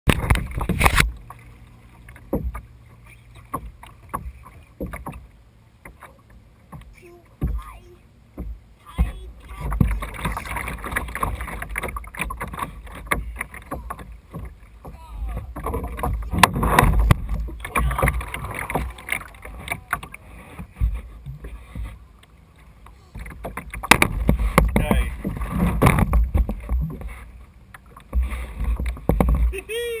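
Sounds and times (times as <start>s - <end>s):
water splashing around kayak: 0.0s - 30.0s
wind rumble on microphone: 8.4s - 22.0s, 23.1s - 27.5s
knocks and clatter: 23.2s - 27.1s, 28.1s - 29.5s.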